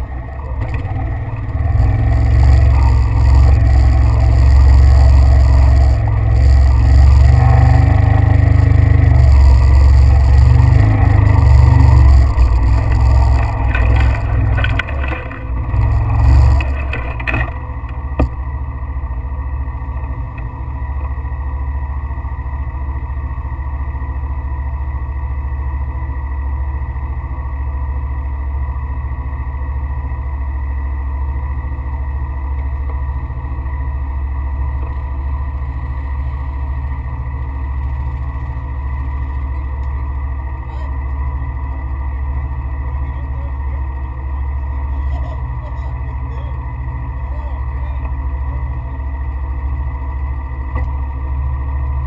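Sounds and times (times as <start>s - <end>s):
vehicle engine running: 0.0s - 52.0s
rattling: 9.2s - 18.4s.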